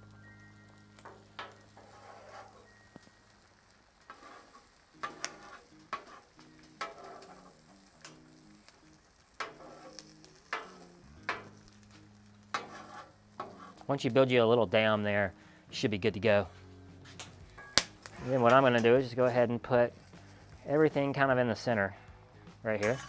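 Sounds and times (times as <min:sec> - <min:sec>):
eggs sizzling on a griddle: 0:00.0 - 0:14.4, 0:17.1 - 0:23.0
metal spatula scraping steel: 0:01.0 - 0:14.1, 0:17.3 - 0:21.8, 0:22.7 - 0:23.0.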